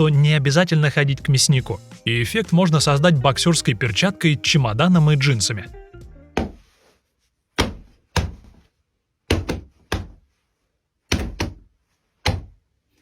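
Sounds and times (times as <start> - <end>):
boxing glove punching suitcase: 6.3 - 6.6, 7.6 - 8.6, 11.1 - 11.7.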